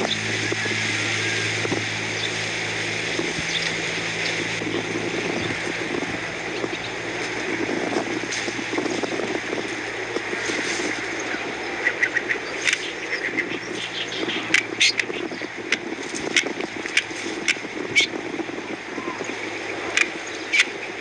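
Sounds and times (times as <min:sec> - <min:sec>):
birds chirping: 0:00.0 - 0:21.0
steady rushing background: 0:00.0 - 0:21.0.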